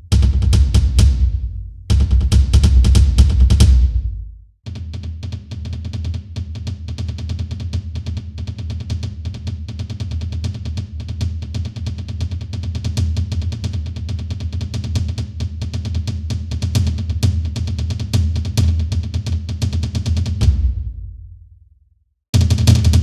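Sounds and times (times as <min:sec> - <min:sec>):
loud drum hits: 0:00.0 - 0:04.4, 0:20.3 - 0:21.4, 0:22.4 - 0:23.0
snare and kick drum roll: 0:00.0 - 0:21.6, 0:22.4 - 0:23.0.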